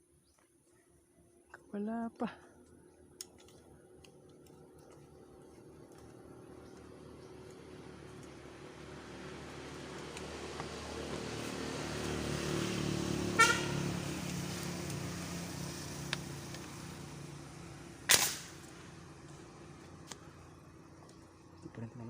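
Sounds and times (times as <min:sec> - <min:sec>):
vehicle engine hum: 0:00.0 - 0:22.0
airgun shot crack: 0:18.1 - 0:18.7.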